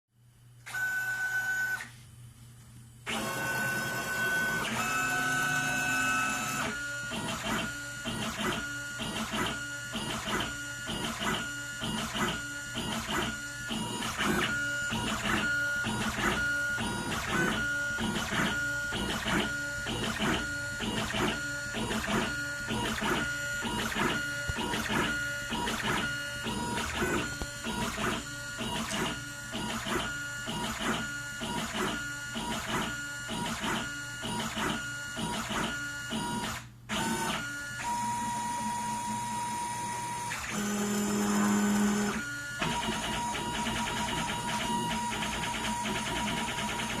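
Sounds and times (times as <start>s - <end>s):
stepper motors whining: 3.1s - 31.0s
short whirring motor moves: 3.1s - 47.0s.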